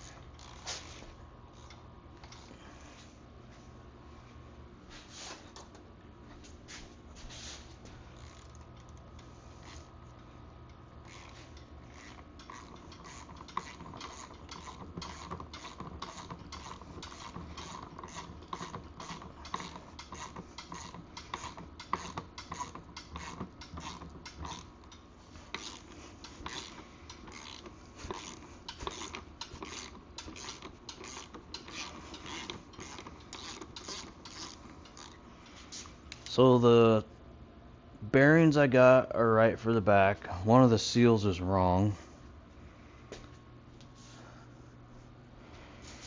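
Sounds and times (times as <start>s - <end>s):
socket ratchet clicking: 11.1s - 35.2s.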